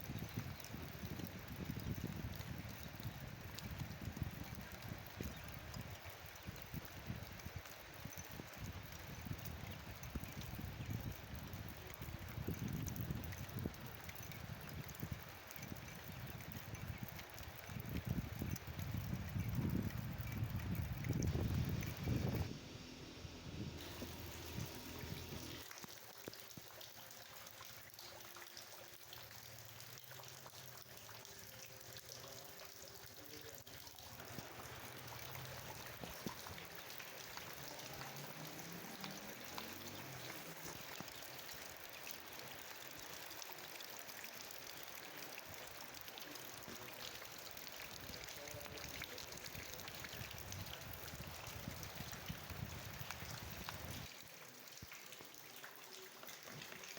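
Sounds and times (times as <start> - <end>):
rain falling: 16.8 - 56.9.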